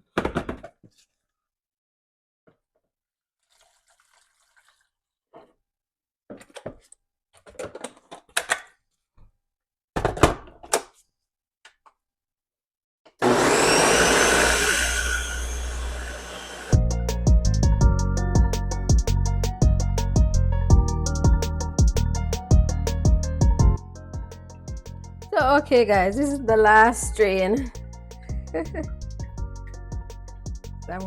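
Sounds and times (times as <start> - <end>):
knocks and clatters of handling: 6.3 - 8.8
electric blender running: 13.2 - 16.8.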